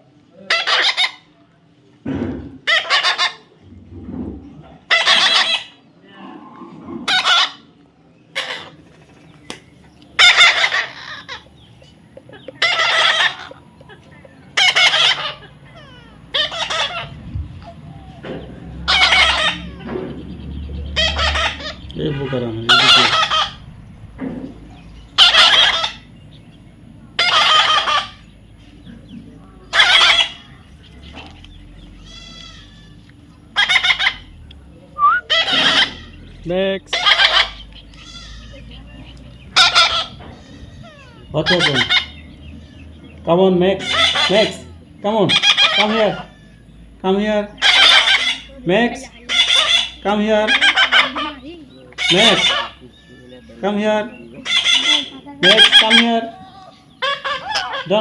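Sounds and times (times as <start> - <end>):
parrot squawking: 0.4 - 1.3, 2.6 - 3.6, 4.8 - 5.8, 7.0 - 7.7, 8.3 - 8.8, 10.2 - 23.7, 25.1 - 26.2, 27.2 - 28.3, 29.6 - 30.7, 31.9 - 34.4, 35.0 - 42.6, 43.6 - 46.6, 47.5 - 58.0.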